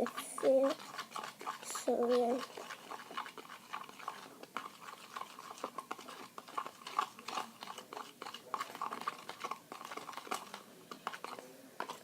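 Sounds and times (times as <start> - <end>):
slime stirred wet clicks: 0.0 - 12.0.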